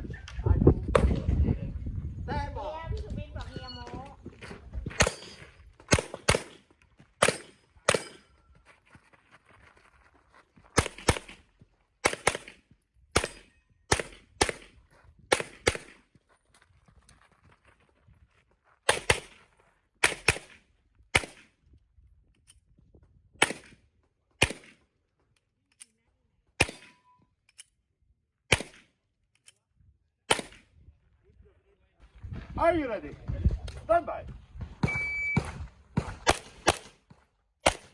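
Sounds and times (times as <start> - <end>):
handgun shots: 5.0 - 6.6, 7.2 - 8.2, 13.2 - 14.7, 26.6 - 27.0.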